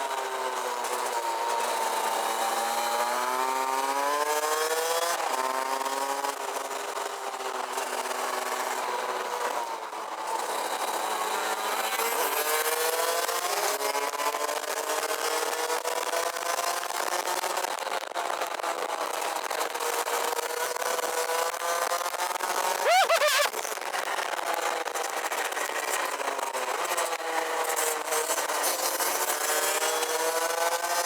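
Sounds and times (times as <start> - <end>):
two-stroke kart engine revving: 22.6 - 23.7.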